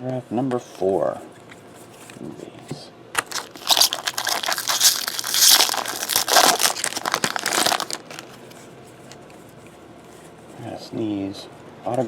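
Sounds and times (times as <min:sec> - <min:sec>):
foil wrapper crinkling and tearing: 0:03.2 - 0:08.6.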